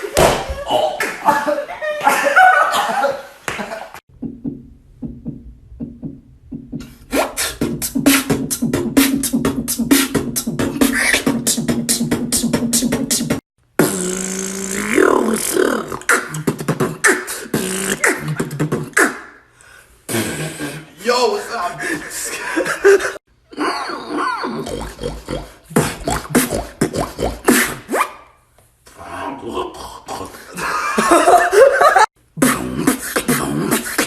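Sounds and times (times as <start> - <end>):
hummed bass tone: 4.1 - 10.8
person beatboxing: 4.2 - 19.4, 24.6 - 28.0, 32.4 - 34.0.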